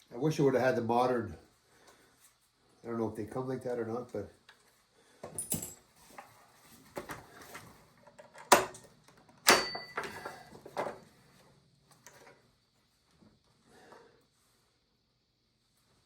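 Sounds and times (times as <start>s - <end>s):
metallic clanks of saw parts: 9.4s - 10.9s.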